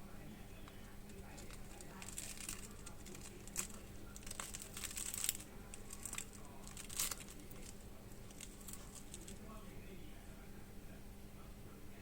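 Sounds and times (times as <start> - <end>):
crisp crackles and crunches: 1.0 - 9.5.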